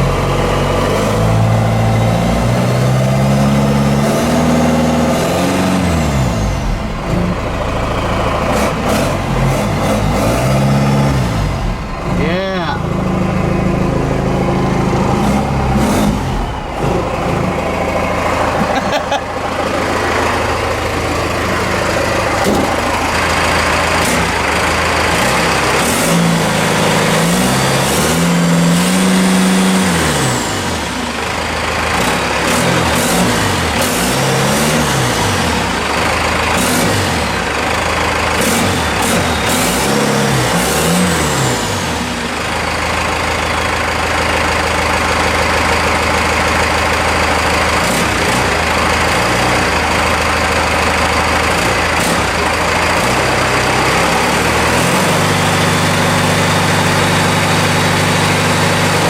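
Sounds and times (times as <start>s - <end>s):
diesel engine revving: 0.0s - 59.0s
high turbo whistle: 12.8s - 18.6s.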